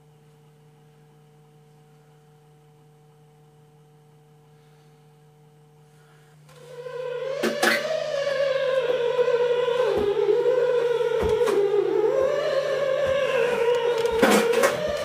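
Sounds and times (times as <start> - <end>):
faint steady hum: 0.0 - 15.0
music with long held notes: 6.5 - 15.0.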